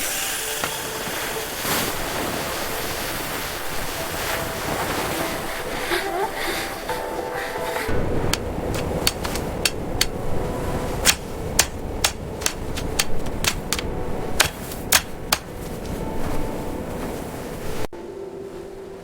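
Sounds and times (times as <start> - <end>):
sharp hammer-like knocks: 8.4 - 10.2, 11.0 - 15.5.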